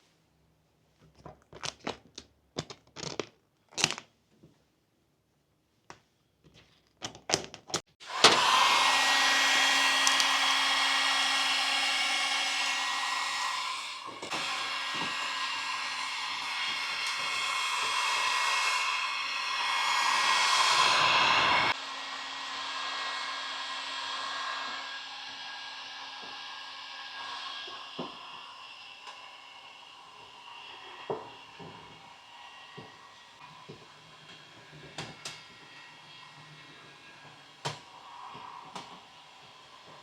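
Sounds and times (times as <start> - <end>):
electric blower whirring: 8.0 - 40.0.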